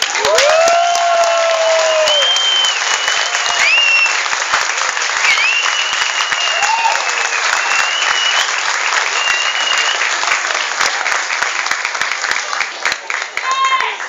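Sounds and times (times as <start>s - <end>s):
audience applauding: 0.0s - 14.0s.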